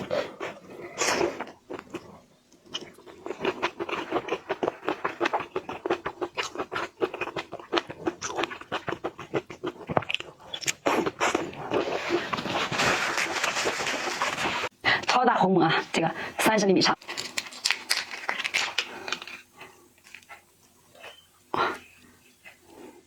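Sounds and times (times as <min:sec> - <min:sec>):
shrimp shell crunching: 0:17.0 - 0:20.3.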